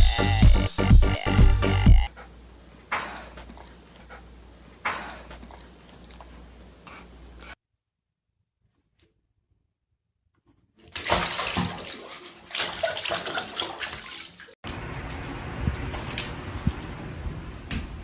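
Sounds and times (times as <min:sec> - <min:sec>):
water running and splashing: 0:10.9 - 0:14.6.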